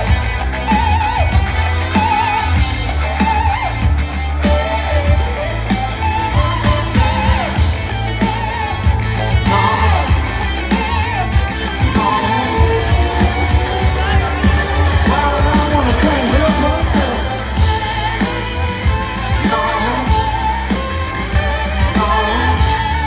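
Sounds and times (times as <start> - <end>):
bass and drums: 0.0 - 23.0
electric guitar: 0.0 - 23.0
person singing: 8.3 - 23.0.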